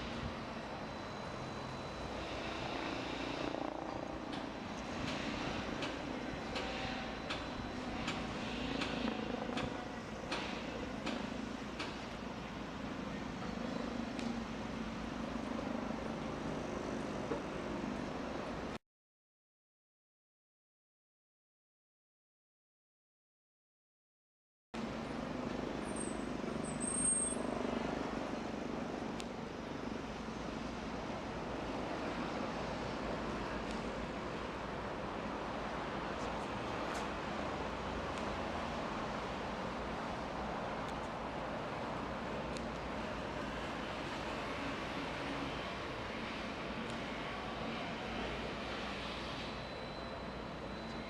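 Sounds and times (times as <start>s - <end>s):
construction machinery: 0.0s - 18.5s
city traffic: 0.0s - 18.8s, 24.8s - 51.0s
brief high squeal: 25.8s - 27.5s, 48.9s - 51.0s.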